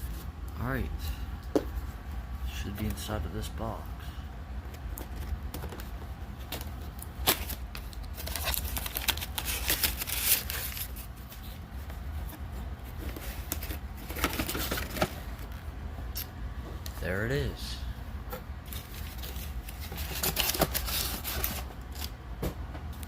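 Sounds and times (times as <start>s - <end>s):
steady low hum: 0.0s - 23.0s
cardboard rustling and scraping: 5.0s - 15.6s, 18.6s - 22.1s.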